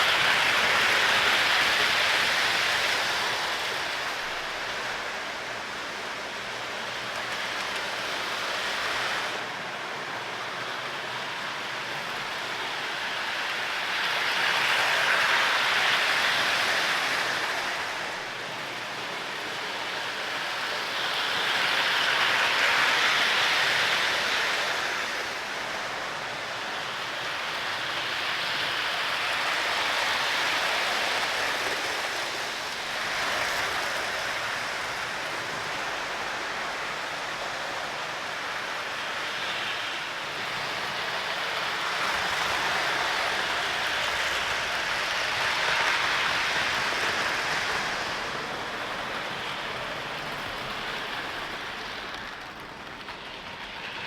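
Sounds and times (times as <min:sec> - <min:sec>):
model train running on track: 0:00.0 - 0:54.0.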